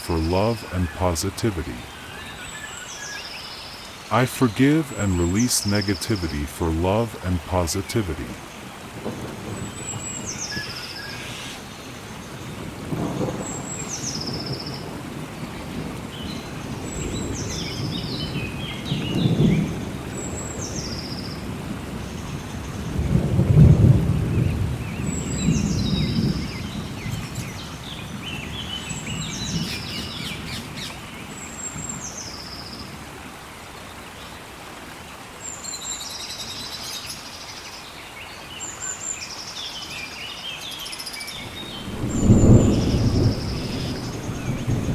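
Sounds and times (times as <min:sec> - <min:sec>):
steady rain: 0:00.0 - 0:44.9
rolling thunder: 0:41.4 - 0:44.9.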